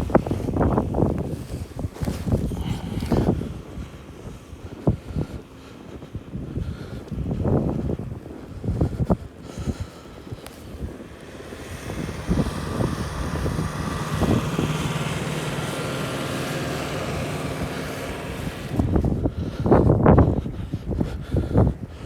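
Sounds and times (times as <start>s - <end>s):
wind noise: 0.0s - 22.0s
vehicle engine running: 10.0s - 20.0s.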